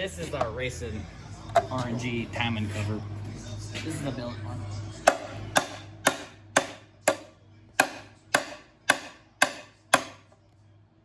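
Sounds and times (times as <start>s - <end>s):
hammer striking pry bar: 5.0s - 10.3s.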